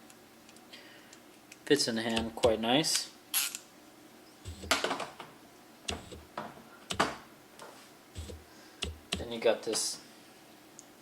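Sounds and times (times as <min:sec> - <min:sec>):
hand tools clicking and knocking: 0:02.1 - 0:02.6, 0:08.2 - 0:09.3.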